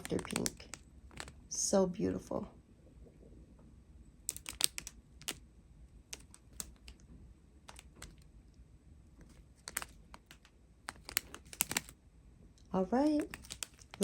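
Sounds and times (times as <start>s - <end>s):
plastic bags clicking and tapping: 0.0s - 1.4s, 4.3s - 5.4s, 6.1s - 7.1s, 7.7s - 8.3s, 9.2s - 12.0s, 13.0s - 14.0s.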